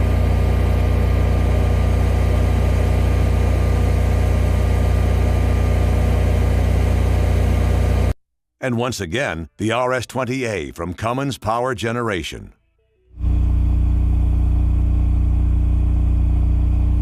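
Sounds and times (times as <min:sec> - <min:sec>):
generator engine drone: 0:00.0 - 0:08.1, 0:13.2 - 0:17.0.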